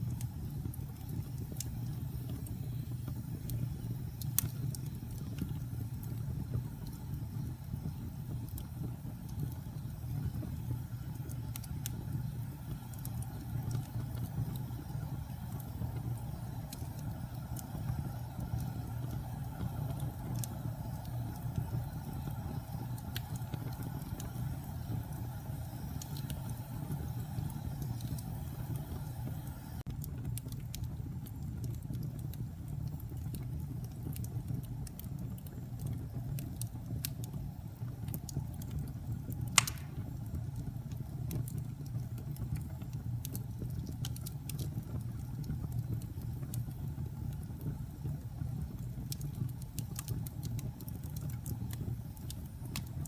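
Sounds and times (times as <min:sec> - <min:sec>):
fire crackles and pops: 0:00.0 - 0:53.0
fire rumbling in fireplace: 0:00.0 - 0:53.0.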